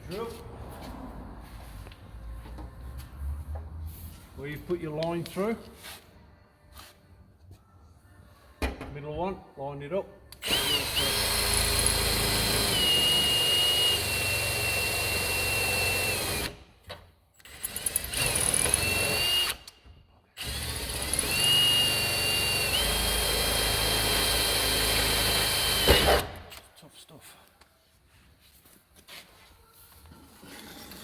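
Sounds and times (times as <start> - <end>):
electric drill drilling metal panel: 10.4 - 16.5, 17.5 - 19.6, 20.4 - 26.4.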